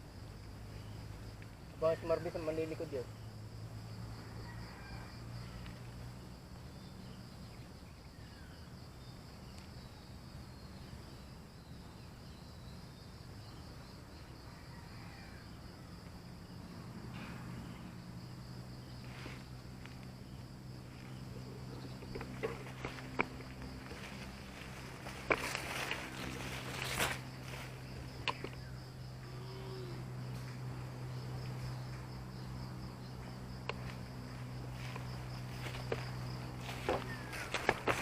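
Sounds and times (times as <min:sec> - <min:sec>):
high-pitched insect chorus: 0:00.0 - 0:38.0
faint rustles: 0:18.8 - 0:28.7.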